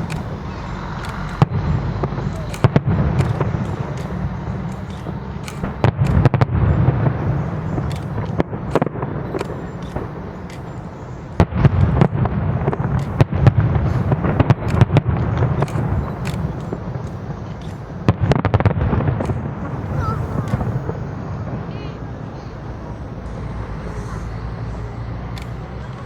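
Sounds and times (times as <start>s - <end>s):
fireworks bangs and pops: 0.0s - 26.0s.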